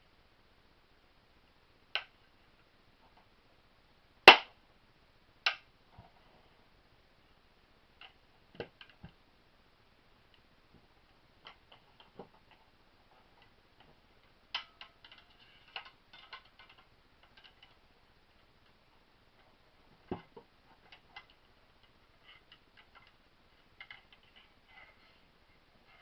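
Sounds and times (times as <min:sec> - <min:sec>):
small metal parts clicking: 0:11.4 - 0:18.8, 0:20.2 - 0:25.0.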